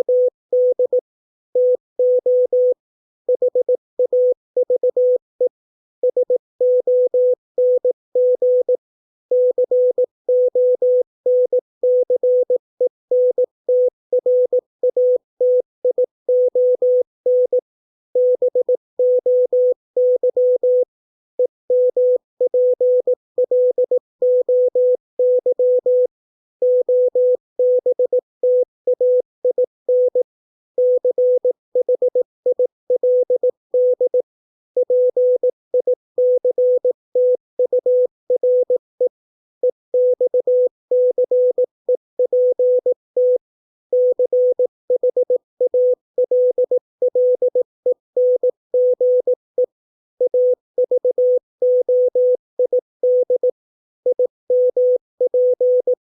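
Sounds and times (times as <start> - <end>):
morse code beeps: 34.8 - 43.4, 44.0 - 53.5, 54.1 - 56.0.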